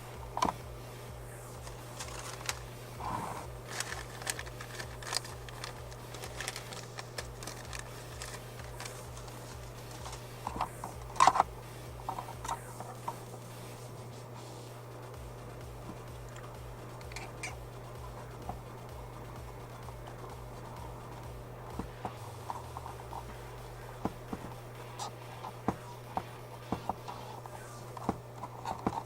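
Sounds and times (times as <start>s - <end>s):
low hum: 0.0s - 29.0s
wires clicking and rustling: 1.3s - 13.9s, 15.4s - 29.0s.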